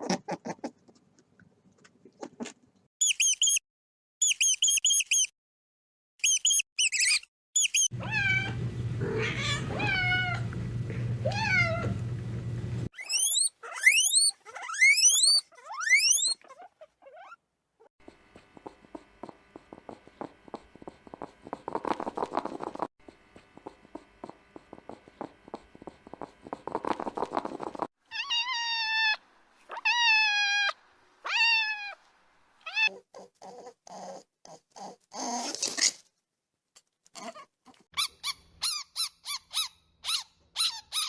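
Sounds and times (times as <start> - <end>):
cat meowing: 8.0 - 10.4, 11.3 - 12.0, 28.1 - 32.0
cat purring: 18.5 - 22.9, 23.5 - 27.9.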